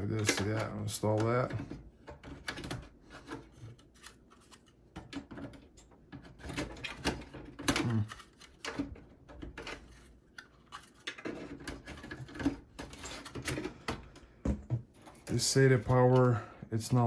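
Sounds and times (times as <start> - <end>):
clicks and taps inside computer case: 4.9 - 9.8.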